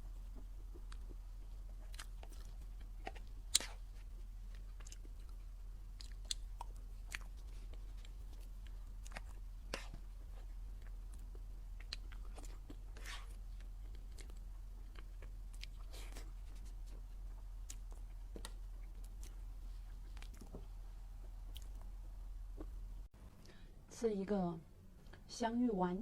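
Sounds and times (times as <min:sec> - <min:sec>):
chewing and biting: 0:00.2 - 0:20.6.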